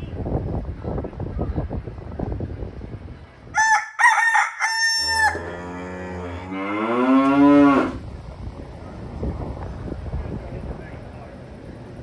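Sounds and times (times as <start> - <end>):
rooster crowing: 3.6 - 8.0
cow mooing: 4.9 - 8.0.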